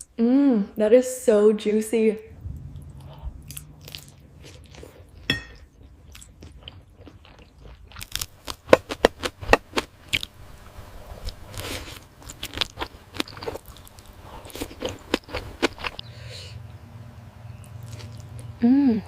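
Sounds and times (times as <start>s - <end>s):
chewing with wet crunchy smacks: 3.0s - 10.3s, 11.2s - 16.1s, 17.6s - 18.6s.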